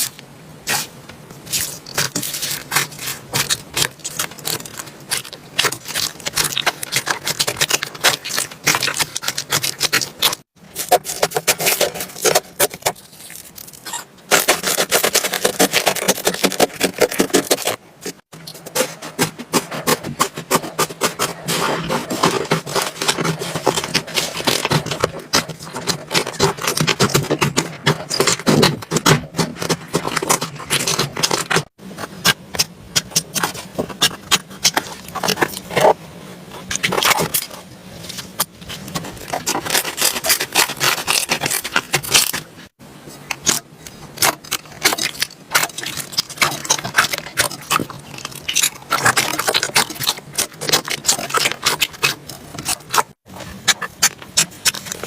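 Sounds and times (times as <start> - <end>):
slime crackling and popping: 1.5 - 18.3, 39.2 - 42.4.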